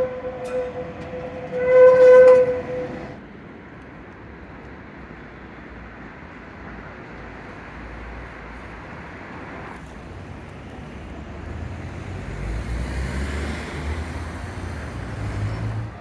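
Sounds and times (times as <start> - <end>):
vehicle horn blast: 0.0 - 2.9
street traffic noise: 0.0 - 16.0.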